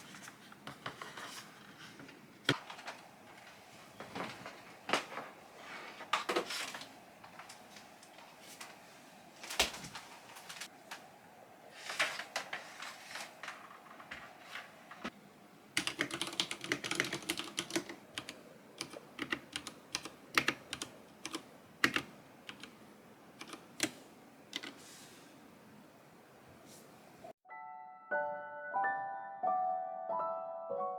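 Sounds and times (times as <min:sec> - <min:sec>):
mechanical keyboard typing: 0:15.8 - 0:22.8, 0:23.4 - 0:24.8.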